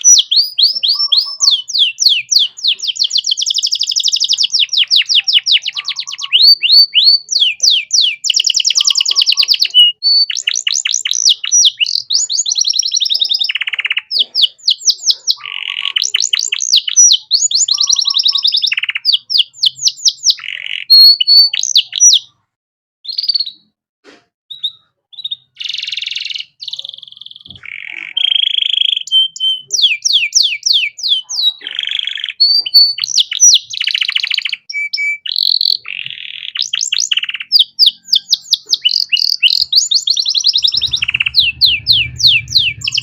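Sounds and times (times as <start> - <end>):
canary singing trills: 0.0 - 22.4, 23.1 - 23.8, 24.5 - 43.0.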